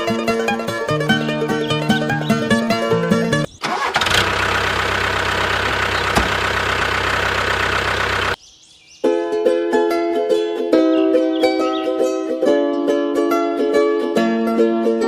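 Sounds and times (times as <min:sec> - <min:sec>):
plucked-string music: 0:00.0 - 0:03.8, 0:09.0 - 0:15.0
motor running: 0:03.9 - 0:08.4.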